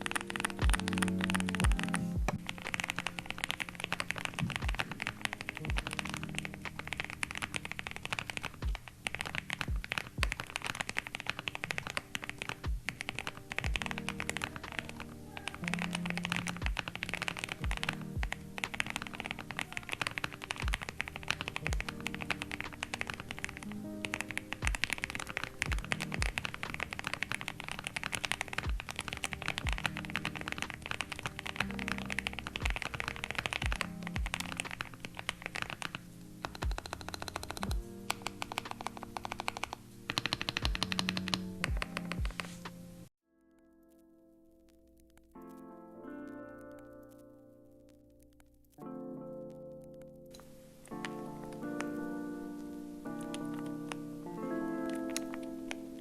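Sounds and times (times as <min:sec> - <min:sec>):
mechanical keyboard typing: 0:00.0 - 0:42.6, 0:49.5 - 0:56.0
music with deep bass beat: 0:00.6 - 0:02.7, 0:04.4 - 0:04.9, 0:05.6 - 0:06.8, 0:13.6 - 0:14.8, 0:17.6 - 0:18.8, 0:20.6 - 0:20.9, 0:21.6 - 0:22.8, 0:29.6 - 0:30.7, 0:32.6 - 0:33.0, 0:33.6 - 0:34.5.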